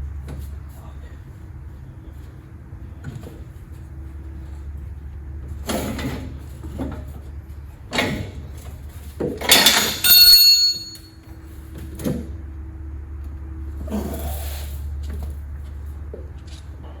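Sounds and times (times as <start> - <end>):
low steady hum: 0.0 - 17.0
metal clang ringing: 9.4 - 11.3.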